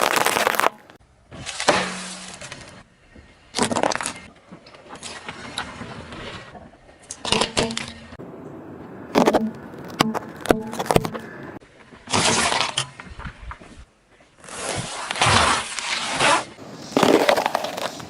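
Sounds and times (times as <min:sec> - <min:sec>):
objects crushed under car tyre: 0:16.9 - 0:18.0.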